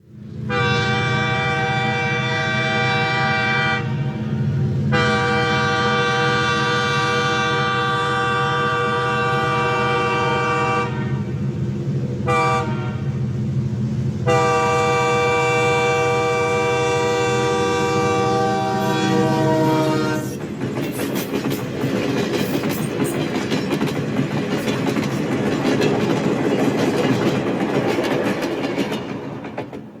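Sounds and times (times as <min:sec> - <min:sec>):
locomotive air horn: 0:00.5 - 0:11.4, 0:12.2 - 0:13.2, 0:14.2 - 0:20.4
train wheels clattering over rails: 0:19.3 - 0:30.0.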